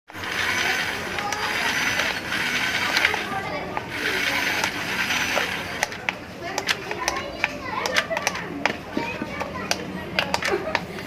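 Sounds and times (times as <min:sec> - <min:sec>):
mechanical whirring and ratcheting: 0:00.1 - 0:07.2.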